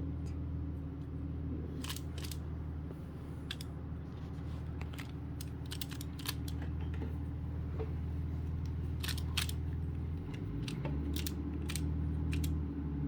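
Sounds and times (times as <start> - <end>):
puzzle cube clicking as turned: 4.8 - 6.6, 9.0 - 9.6, 10.6 - 12.5.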